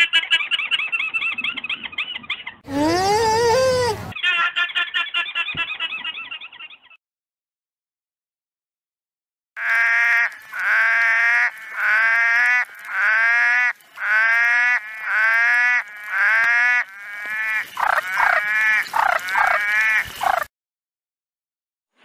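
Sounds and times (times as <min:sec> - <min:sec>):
animal calling: 0:02.7 - 0:06.4.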